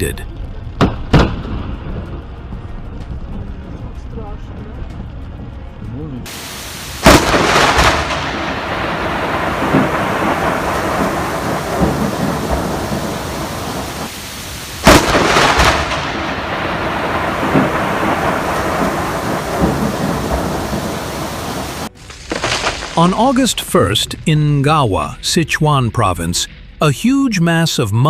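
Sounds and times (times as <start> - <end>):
heavy rain: 6.2 - 24.0
loud thunderclaps: 6.3 - 21.9.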